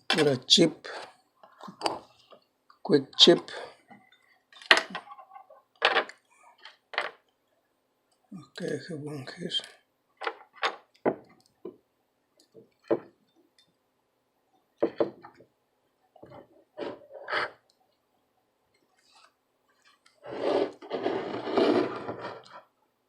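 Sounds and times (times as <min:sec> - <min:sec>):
rubbing or scraping: 0:16.8 - 0:17.6, 0:20.2 - 0:22.7.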